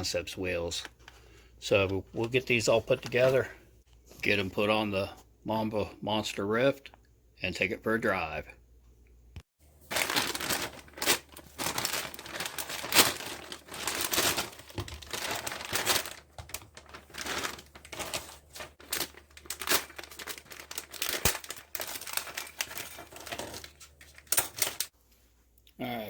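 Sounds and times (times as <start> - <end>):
plastic packaging crinkling and tearing: 9.8 - 24.9.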